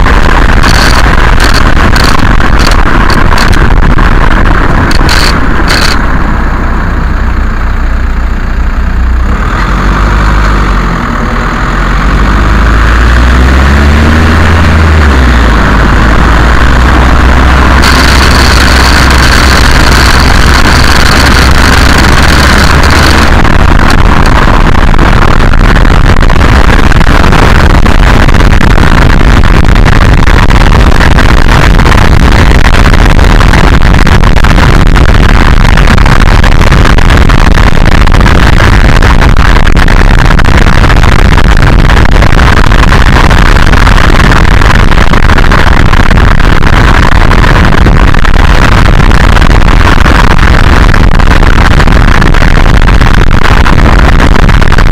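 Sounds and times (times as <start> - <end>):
steady hum: 0.0 - 9.4, 10.2 - 54.9
car road and wind noise: 0.0 - 54.9.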